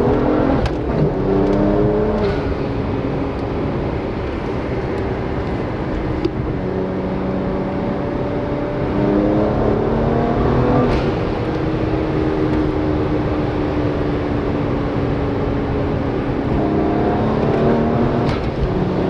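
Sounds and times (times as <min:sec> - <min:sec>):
gear change crack: 0:00.0 - 0:06.6, 0:14.6 - 0:18.8
car engine under load: 0:00.0 - 0:19.0.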